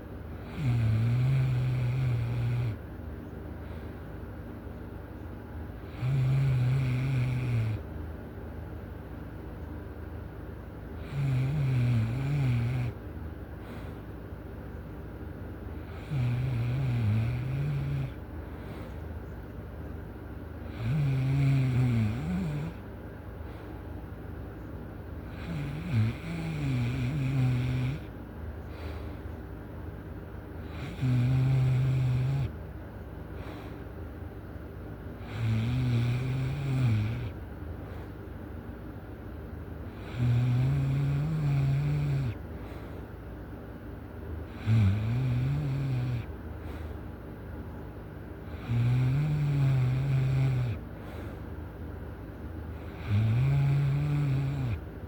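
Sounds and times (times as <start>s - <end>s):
person snoring loudly: 0.4s - 2.8s, 5.9s - 7.8s, 11.0s - 13.0s, 15.8s - 18.2s, 20.7s - 22.8s, 25.3s - 28.0s, 30.6s - 32.5s, 35.2s - 37.4s, 39.9s - 42.4s, 44.5s - 46.3s, 48.5s - 50.8s, 52.8s - 54.8s.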